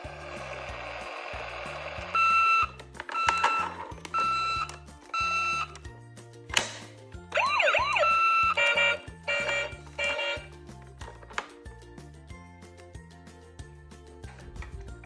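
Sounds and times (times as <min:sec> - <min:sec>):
background music: 0:00.0 - 0:15.0
toy siren wailing: 0:02.0 - 0:05.7, 0:07.3 - 0:10.4
toy short beeps: 0:02.1 - 0:05.8, 0:07.6 - 0:10.4.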